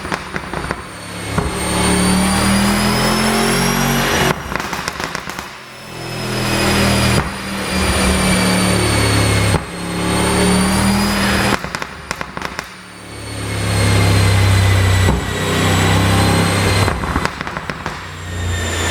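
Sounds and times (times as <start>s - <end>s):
exhaust pops and crackles: 0.0s - 1.6s, 4.2s - 5.7s, 11.5s - 12.8s, 16.8s - 18.2s
car engine revving: 0.0s - 18.9s.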